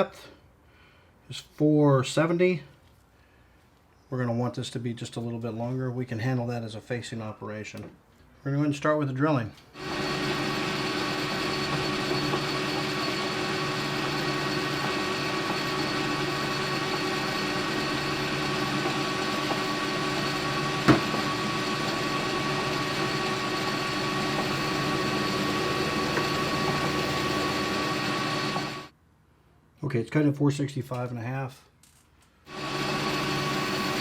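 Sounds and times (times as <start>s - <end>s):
metal lathe running: 9.8s - 28.9s, 32.5s - 34.0s.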